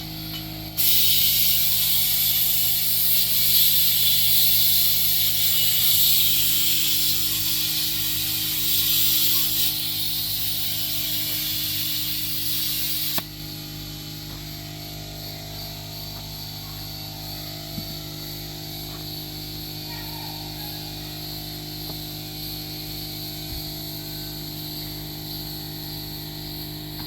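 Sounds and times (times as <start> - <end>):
steady low hum: 0.0 - 27.0
compressed air hissing from hose: 0.7 - 13.4
air hose click: 0.8 - 13.3.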